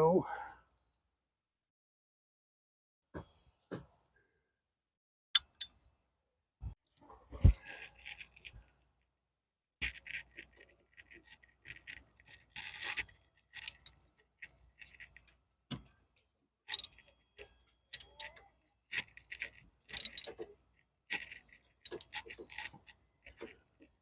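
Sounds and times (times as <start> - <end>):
ratchet clicking: 12.3 - 14.0, 16.7 - 17.1, 17.9 - 18.3, 19.0 - 20.4, 21.1 - 22.7
metal clinks: 16.7 - 17.1, 19.4 - 20.4, 21.9 - 22.2.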